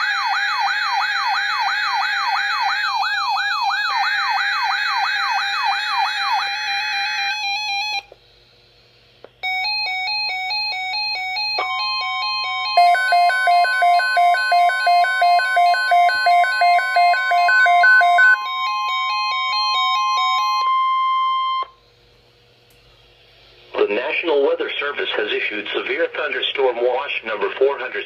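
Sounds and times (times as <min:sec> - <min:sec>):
warbling alarm tone: 0:00.0 - 0:08.1, 0:09.4 - 0:21.8
pulsing beeps: 0:11.0 - 0:21.7.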